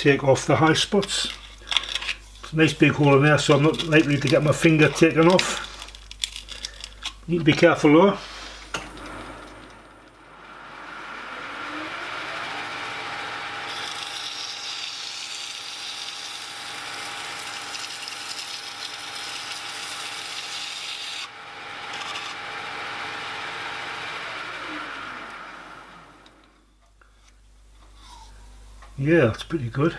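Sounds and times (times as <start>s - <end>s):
lathe motor running: 7.5s - 26.7s.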